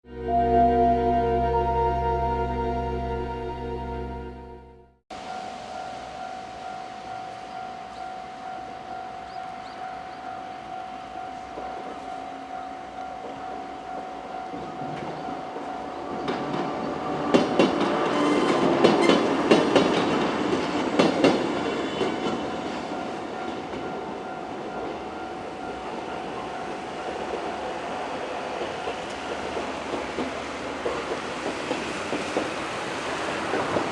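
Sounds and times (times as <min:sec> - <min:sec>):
crossing alarm tone: 0:00.0 - 0:06.0
train wheels clacking over rail joints: 0:16.3 - 0:22.9, 0:28.6 - 0:33.9.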